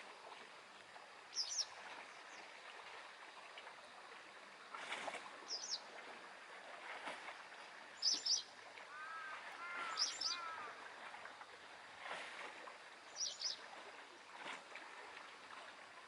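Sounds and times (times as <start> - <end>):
waves lapping: 0.0 - 16.0
small birds twittering: 1.3 - 1.8, 5.5 - 5.9, 8.0 - 10.7, 13.2 - 13.6
lower bird call: 8.0 - 10.9.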